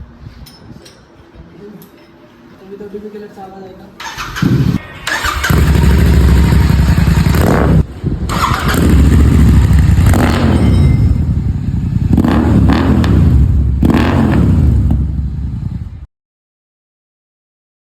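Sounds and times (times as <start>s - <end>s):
motorcycle exhaust revving: 4.1s - 16.1s.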